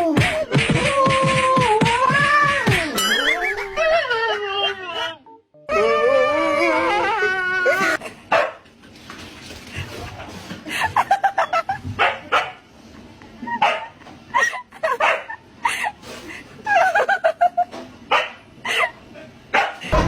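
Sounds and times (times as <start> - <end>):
dog barking: 8.3 - 8.6, 12.0 - 12.6, 13.6 - 13.9, 15.0 - 15.3, 18.1 - 18.4, 19.5 - 19.8.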